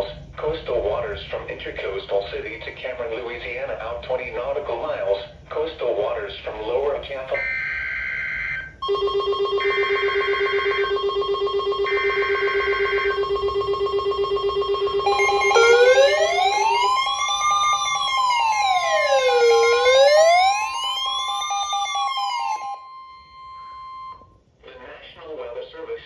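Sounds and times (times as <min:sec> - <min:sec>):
wailing siren: 0:07.4 - 0:24.2
higher beep: 0:12.2 - 0:17.8.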